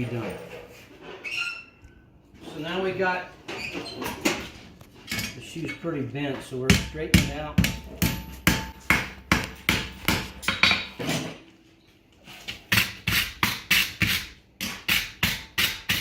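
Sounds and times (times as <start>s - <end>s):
hammer striking horseshoe on anvil: 6.7s - 11.0s, 12.7s - 16.0s.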